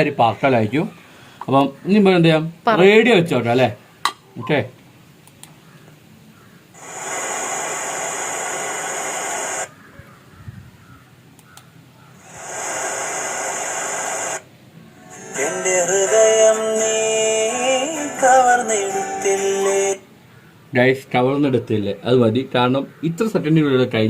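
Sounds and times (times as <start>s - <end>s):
radio static hiss: 6.8s - 9.8s, 12.2s - 20.0s
song with singing on small speaker: 15.0s - 20.1s.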